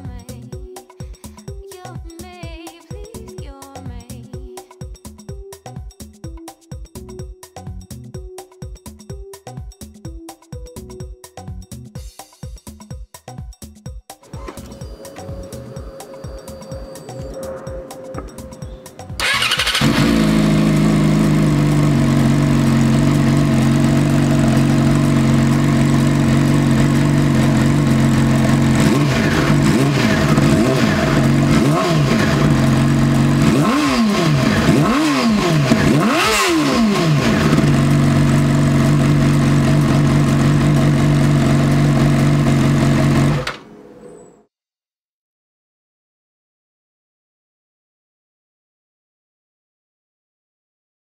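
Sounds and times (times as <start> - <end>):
motorcycle engine idling and revving: 14.5 - 43.7.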